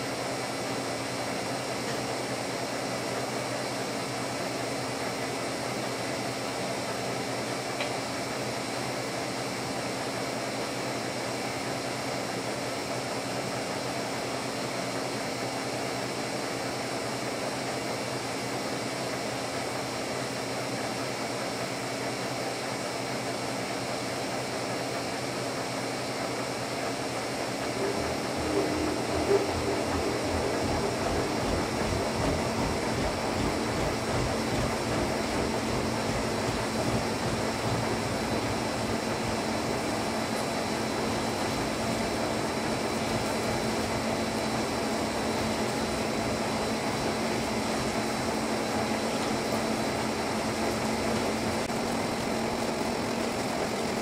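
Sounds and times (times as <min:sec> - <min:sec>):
boring mill machine hum: 0:00.0 - 0:54.0
low pulsing of tool cutting steel: 0:27.7 - 0:34.0.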